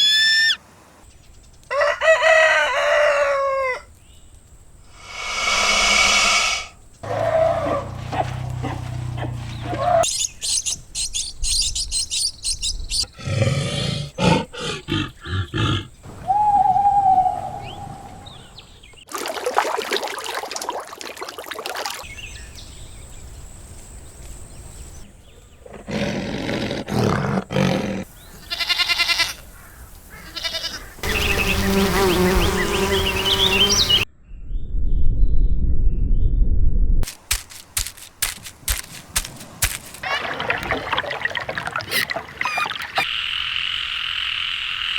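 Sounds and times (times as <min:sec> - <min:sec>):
animal calls: 0:05.0 - 0:10.1, 0:13.1 - 0:18.6.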